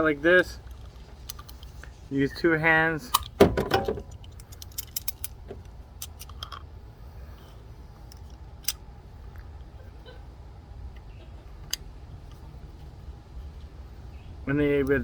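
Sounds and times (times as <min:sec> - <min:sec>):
pliers clicking on metal clamp: 0:03.1 - 0:06.6.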